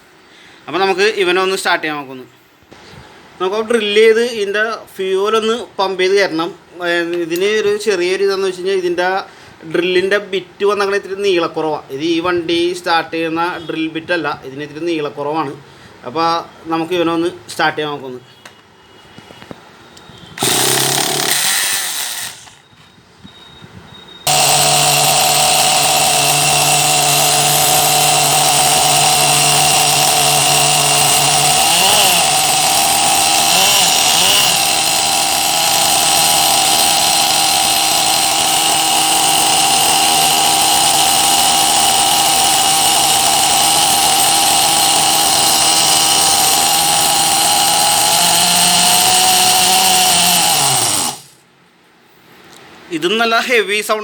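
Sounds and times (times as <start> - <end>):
drill starter whirring: 20.0 - 23.4, 24.2 - 51.4
model truck engine running: 20.4 - 22.6, 24.3 - 51.4.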